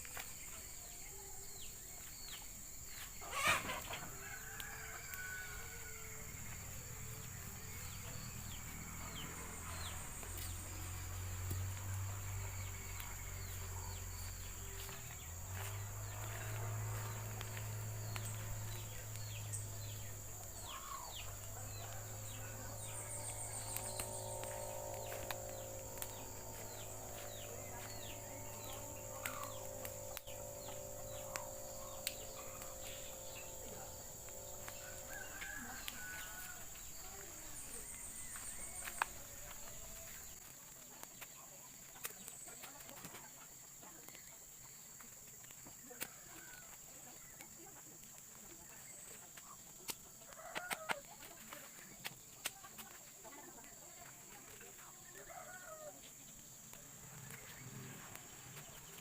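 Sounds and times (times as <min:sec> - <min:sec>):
high-pitched insect drone: 0:00.0 - 0:40.4, 0:54.2 - 0:59.0
low rumble: 0:06.5 - 0:39.8.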